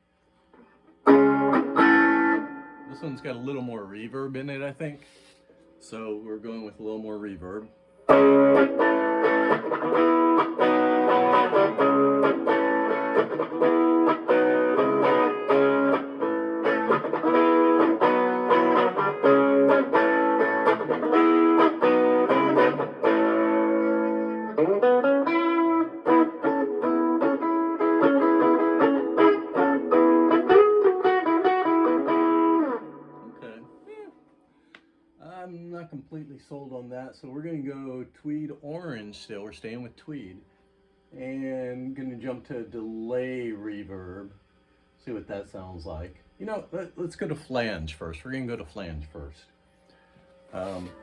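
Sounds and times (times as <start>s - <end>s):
overdriven electric guitar: 0.6s - 3.2s, 8.1s - 34.4s.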